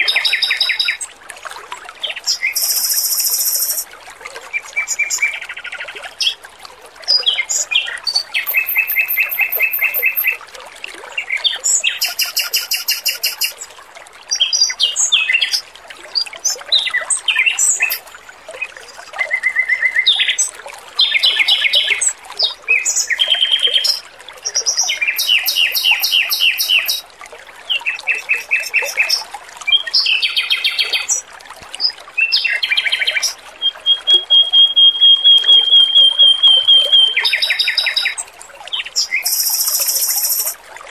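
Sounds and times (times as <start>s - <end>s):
trickle of running water: 0.0s - 40.9s
bird singing trills: 2.3s - 3.8s, 8.4s - 10.4s, 12.0s - 13.5s, 25.1s - 27.0s, 32.3s - 38.2s, 39.0s - 40.6s
long level bird whistle: 2.5s - 3.8s, 12.0s - 13.5s, 32.7s - 38.2s, 39.2s - 40.6s.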